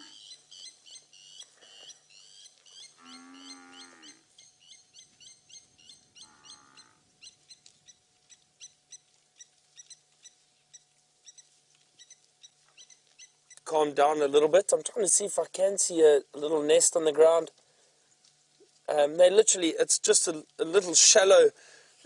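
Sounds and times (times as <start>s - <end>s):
bird metallic tink calls: 0.1s - 13.7s.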